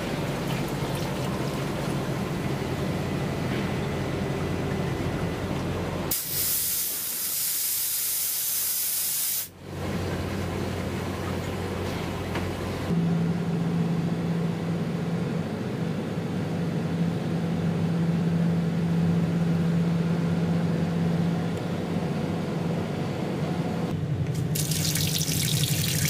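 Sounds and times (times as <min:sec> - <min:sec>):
machine low hum: 0:00.0 - 0:06.1
loud air blast hiss: 0:06.1 - 0:09.5.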